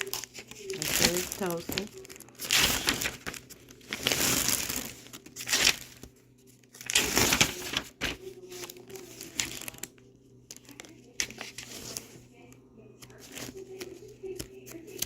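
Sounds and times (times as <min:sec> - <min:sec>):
packaging crinkling: 0:00.0 - 0:12.1.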